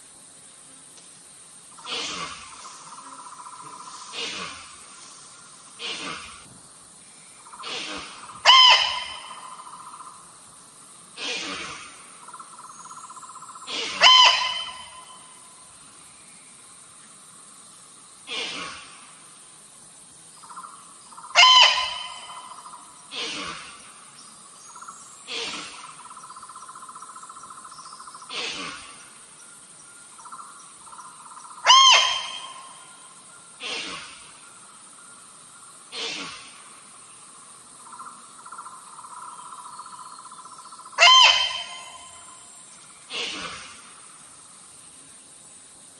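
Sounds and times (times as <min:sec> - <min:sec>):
pulsing insect buzz: 0:01.6 - 0:16.8, 0:18.0 - 0:45.2
buzzy pulsing deer call: 0:07.5 - 0:10.1, 0:13.6 - 0:15.4, 0:31.6 - 0:33.9, 0:40.8 - 0:42.5
high piercing deer call: 0:07.6 - 0:10.1, 0:12.6 - 0:15.4, 0:20.4 - 0:23.4, 0:31.4 - 0:33.9, 0:40.7 - 0:42.5.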